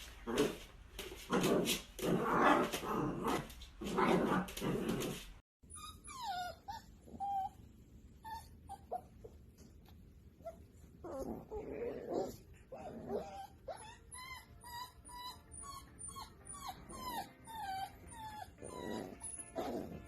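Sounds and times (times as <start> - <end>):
dog whining and yipping: 5.6 - 9.4, 10.4 - 20.0.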